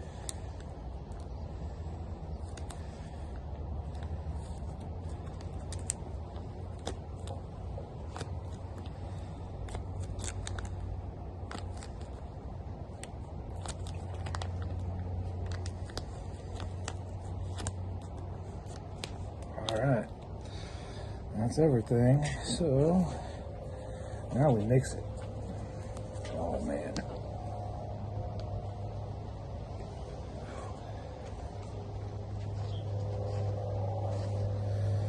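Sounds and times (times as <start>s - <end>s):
steady low hum: 0.0s - 35.0s
plastic packets crinkling: 2.4s - 20.6s.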